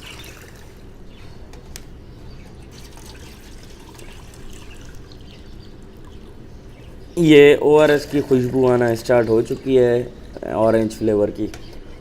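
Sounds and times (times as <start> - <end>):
water sloshing in a bowl: 2.6 - 6.4, 7.7 - 10.5.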